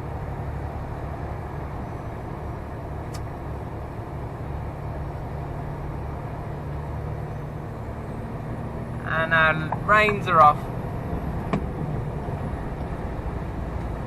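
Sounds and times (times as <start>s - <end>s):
lorry engine rumble: 0.0s - 14.0s.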